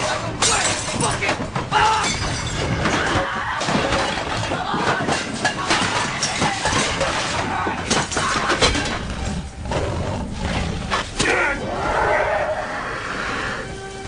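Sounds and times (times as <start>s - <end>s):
crashes and breaking impacts: 0.4s - 9.3s.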